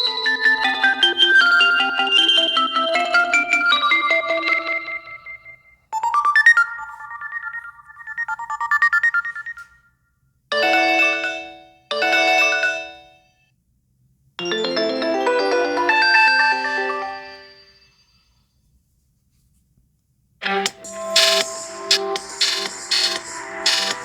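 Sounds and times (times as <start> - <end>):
fast-pulsing electronic ringtone melody: 0.0 - 9.6, 20.4 - 24.0
chime chords: 14.4 - 18.3.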